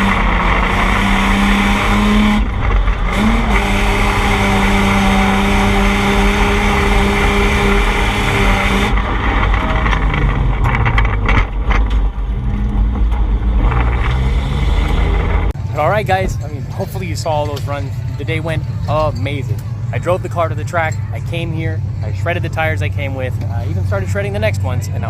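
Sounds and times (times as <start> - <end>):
car engine at high revs: 0.0 - 15.8
tyre and exhaust noise: 0.0 - 25.0.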